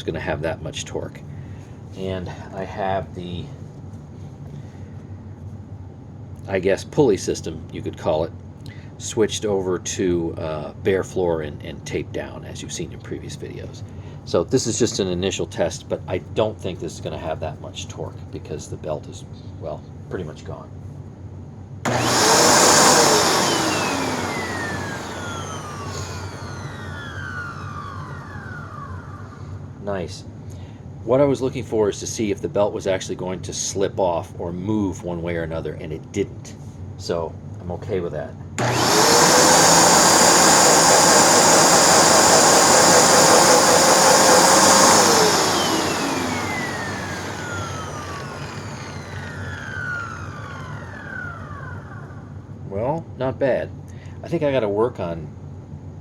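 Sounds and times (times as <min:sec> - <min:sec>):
vacuum cleaner whining: 0:21.9 - 0:30.0, 0:38.6 - 0:52.6.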